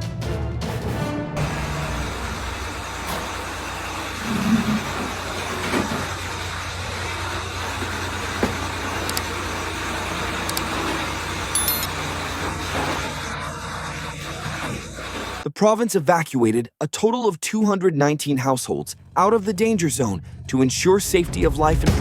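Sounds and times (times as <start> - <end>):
knocks and clicks: 8.4 - 9.4.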